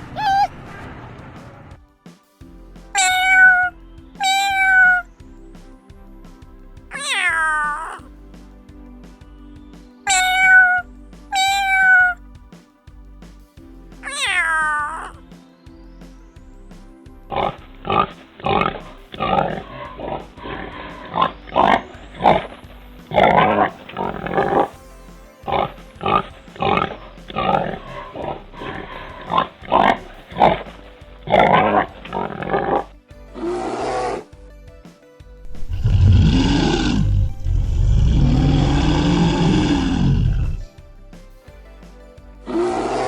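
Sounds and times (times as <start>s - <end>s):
background music: 0.0s - 43.0s
deep animal call: 35.6s - 40.6s
pig grunting: 35.6s - 40.6s.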